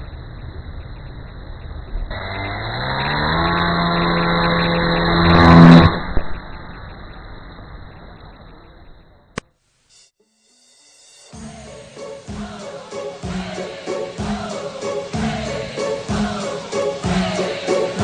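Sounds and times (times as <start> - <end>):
model plane motor and propeller: 2.1 - 5.9.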